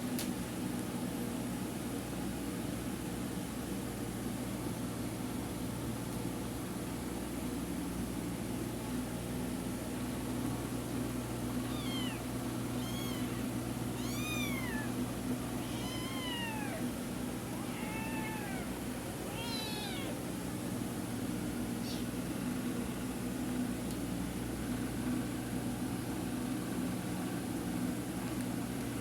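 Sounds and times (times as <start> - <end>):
steady low hum: 0.0 - 29.0
kitten meowing: 11.6 - 15.0, 15.6 - 16.9, 17.6 - 20.2.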